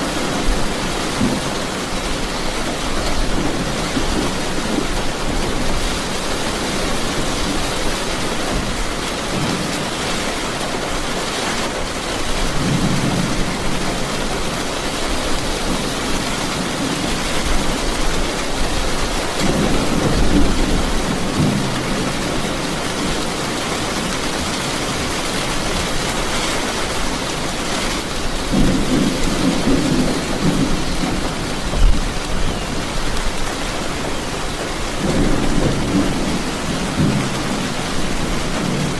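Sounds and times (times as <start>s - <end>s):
rain hissing: 0.0s - 38.9s
thunder rumbling: 12.2s - 38.9s.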